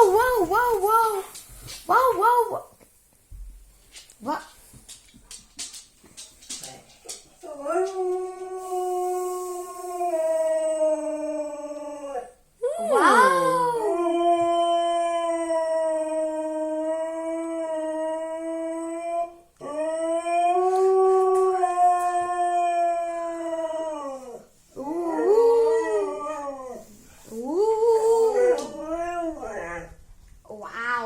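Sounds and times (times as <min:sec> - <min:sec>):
dog howling: 0:07.4 - 0:26.8, 0:27.4 - 0:30.0.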